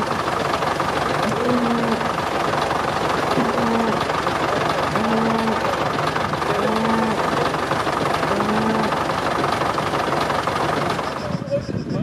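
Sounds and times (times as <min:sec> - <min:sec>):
heavy construction machinery rattling: 0:00.0 - 0:12.0
low pulsing tone: 0:01.2 - 0:02.2, 0:03.3 - 0:04.1.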